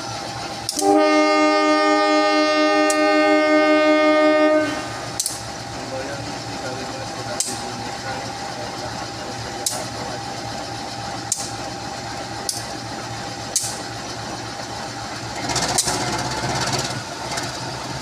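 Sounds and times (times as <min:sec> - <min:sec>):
train diesel engine running: 0:00.0 - 0:18.0
sharp clicks: 0:05.2 - 0:05.5, 0:13.5 - 0:13.8.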